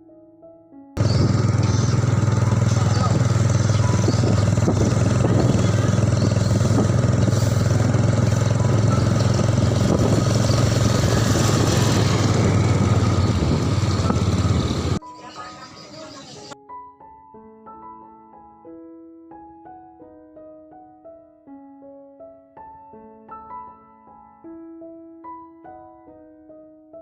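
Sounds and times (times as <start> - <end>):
small engine running: 1.0 - 15.0.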